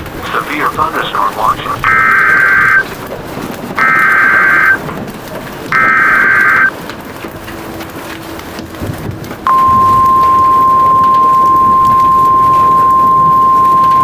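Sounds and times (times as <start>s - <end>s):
steady rain: 0.0s - 14.0s
warbling digital data tones: 0.3s - 2.9s, 3.8s - 4.8s, 5.7s - 6.7s, 9.5s - 14.0s.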